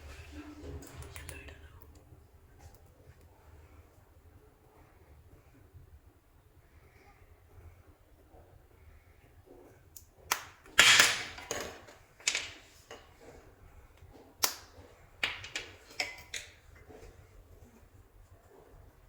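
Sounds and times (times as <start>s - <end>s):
clay popping and crackling: 9.6s - 17.8s.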